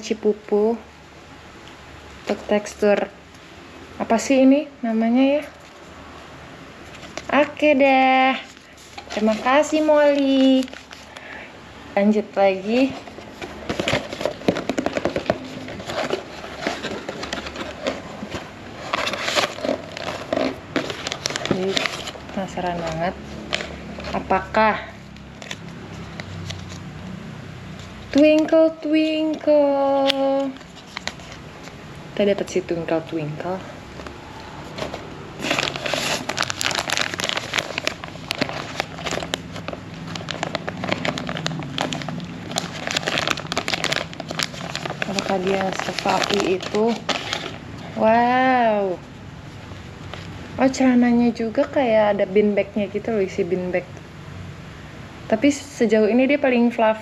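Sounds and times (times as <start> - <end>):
cardboard and plastic rustling: 6.8 - 11.4, 12.0 - 27.0, 27.7 - 48.7
plastic packaging crinkling: 6.8 - 11.4, 12.2 - 27.0, 27.8 - 32.5, 33.9 - 48.7.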